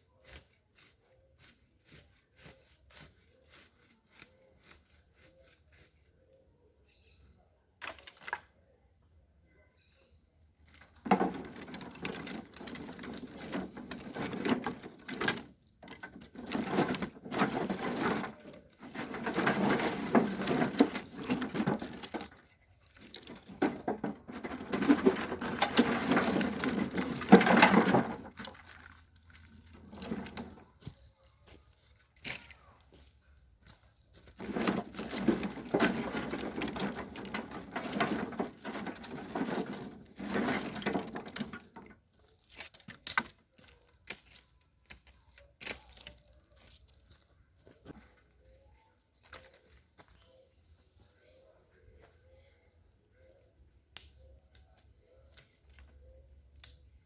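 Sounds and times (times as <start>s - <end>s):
twigs snapping and crackling: 42.1s - 47.2s, 54.0s - 54.6s, 55.3s - 57.0s.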